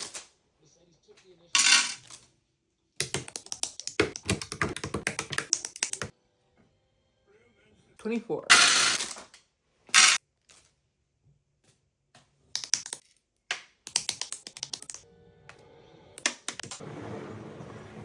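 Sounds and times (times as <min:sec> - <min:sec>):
plastic pieces clicking: 0:03.0 - 0:06.1, 0:12.6 - 0:15.0, 0:16.2 - 0:16.8.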